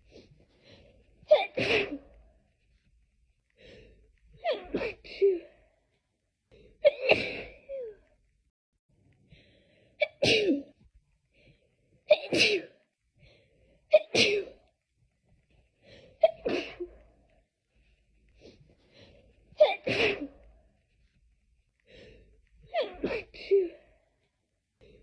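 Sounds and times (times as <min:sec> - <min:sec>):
person sneezing: 0:01.3 - 0:02.2, 0:06.9 - 0:07.9, 0:10.0 - 0:10.7, 0:12.1 - 0:12.8, 0:19.6 - 0:20.4, 0:22.7 - 0:23.8.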